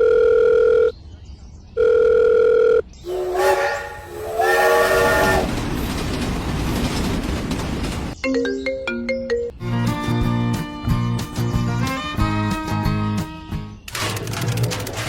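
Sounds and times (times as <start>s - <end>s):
passing train rumble: 3.0s - 8.2s
train horn blast: 3.1s - 5.6s.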